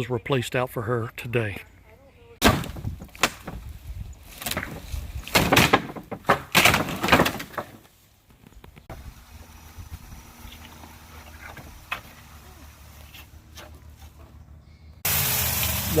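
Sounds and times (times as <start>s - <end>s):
wooden boards cracking and breaking: 2.4s - 7.9s.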